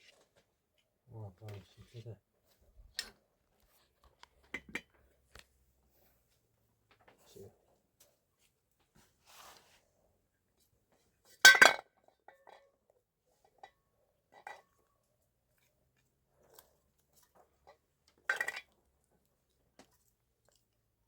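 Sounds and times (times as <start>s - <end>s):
dishes and utensils clattering: 18.3s - 18.6s.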